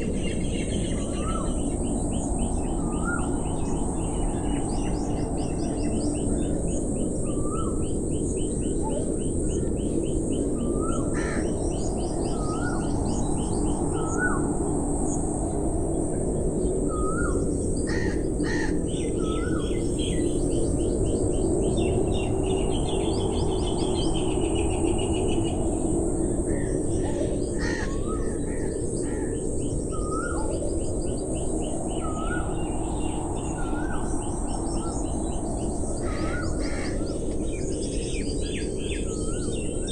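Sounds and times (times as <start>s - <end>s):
birds chirping and trilling: 0.0s - 15.3s, 16.4s - 39.9s
harsh caws: 11.1s - 11.6s, 17.9s - 18.9s, 27.1s - 29.4s, 36.0s - 37.2s.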